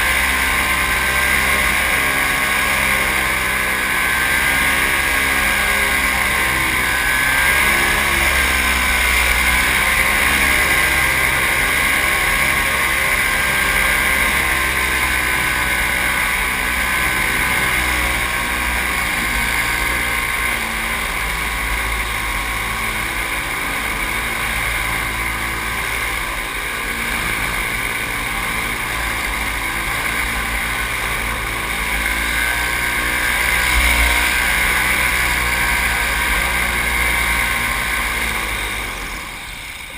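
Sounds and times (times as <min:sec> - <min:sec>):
paramotor engine and propeller: 0:00.0 - 0:39.9.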